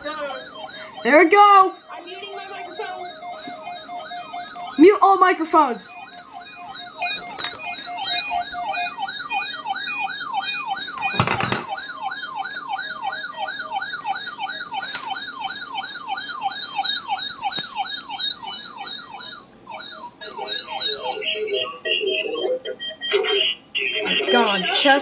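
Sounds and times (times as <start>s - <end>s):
high warbling tone: 0.0s - 11.8s
siren yelping: 0.0s - 25.0s.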